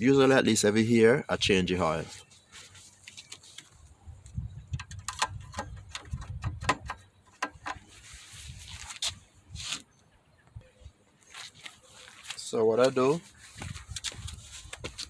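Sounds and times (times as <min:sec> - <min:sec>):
soft rustle: 0:02.0 - 0:04.4, 0:07.8 - 0:09.9, 0:11.2 - 0:15.0.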